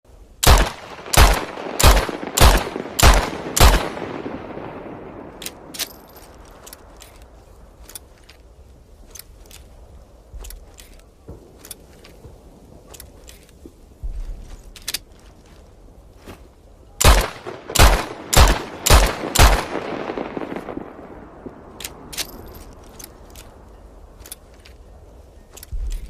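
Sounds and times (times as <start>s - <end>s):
light metallic clicks: 21.7s - 26.0s.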